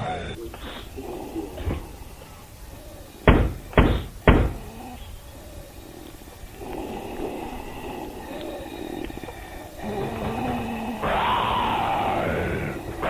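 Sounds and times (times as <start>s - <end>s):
loud thumps: 3.2s - 4.7s.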